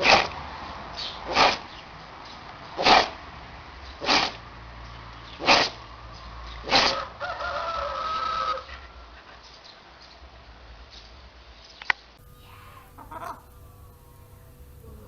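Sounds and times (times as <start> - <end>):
pet sneezing: 0.0 - 0.3, 1.3 - 1.6, 2.8 - 3.1, 4.0 - 4.4, 5.4 - 5.8, 6.7 - 7.0
drawn-out pitched animal call: 12.2 - 15.0.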